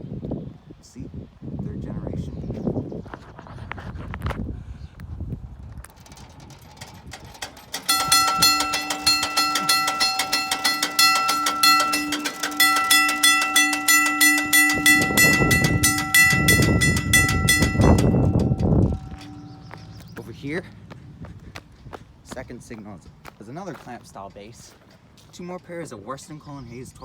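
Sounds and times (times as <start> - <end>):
crossing bell ringing: 6.1 - 20.9.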